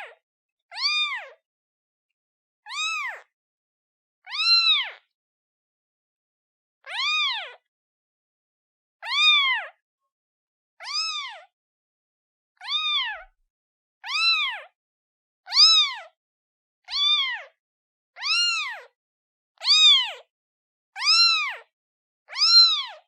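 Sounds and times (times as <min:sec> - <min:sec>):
kitten meowing: 0:00.0 - 0:01.4, 0:02.7 - 0:03.3, 0:04.3 - 0:05.0, 0:06.9 - 0:07.6, 0:09.0 - 0:09.8, 0:10.8 - 0:11.5, 0:12.6 - 0:13.3, 0:14.0 - 0:14.7, 0:15.5 - 0:16.1, 0:16.9 - 0:17.5, 0:18.2 - 0:18.9, 0:19.6 - 0:20.2, 0:21.0 - 0:21.7, 0:22.3 - 0:23.0.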